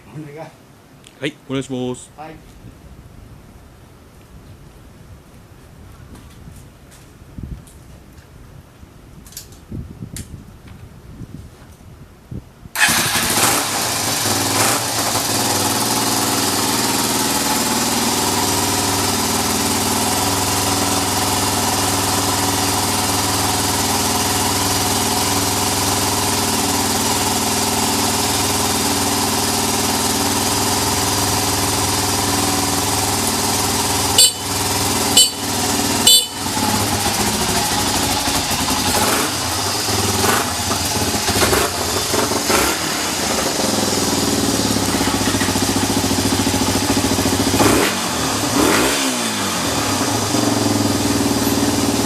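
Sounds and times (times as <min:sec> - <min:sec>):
motorcycle engine idling: 0:12.8 - 0:52.0
motorcycle engine starting: 0:12.8 - 0:52.0.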